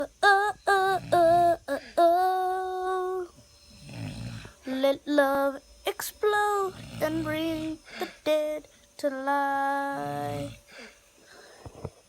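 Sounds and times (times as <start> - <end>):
child singing long notes: 0.0 - 3.3, 4.6 - 10.6
person snoring softly: 0.0 - 4.9, 6.3 - 8.8, 9.7 - 11.9.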